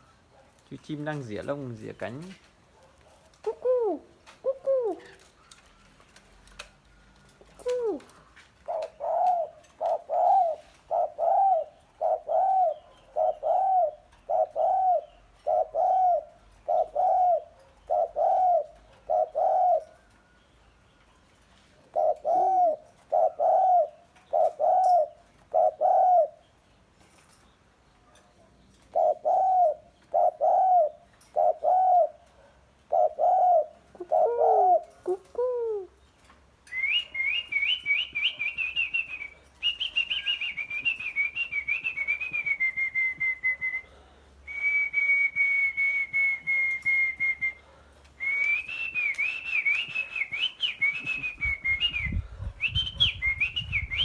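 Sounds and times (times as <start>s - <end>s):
bird hooting call: 3.5s - 5.2s, 8.7s - 20.0s, 22.0s - 26.4s, 29.0s - 32.2s, 32.9s - 36.0s
bird high warbling whistle: 36.7s - 43.9s, 48.2s - 54.0s.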